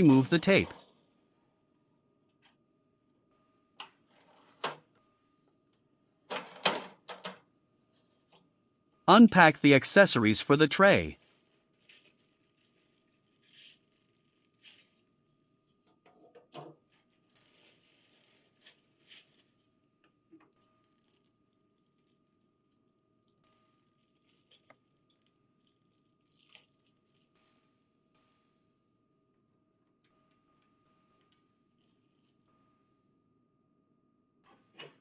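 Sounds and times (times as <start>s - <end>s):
packaging rustling and crinkling: 11.2s - 15.1s, 16.8s - 19.7s.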